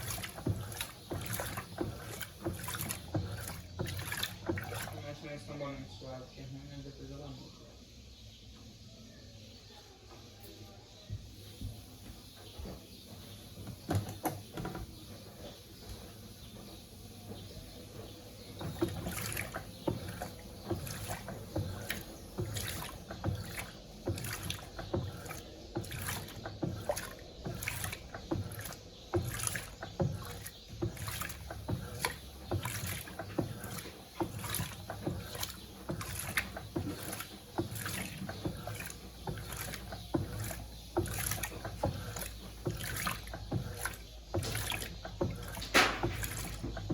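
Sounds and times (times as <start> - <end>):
washing machine water sloshing: 0.0 - 6.5, 11.2 - 46.9.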